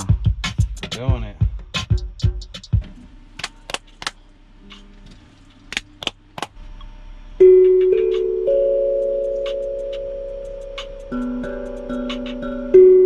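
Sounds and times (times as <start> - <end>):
held keyboard chord: 7.4 - 13.0.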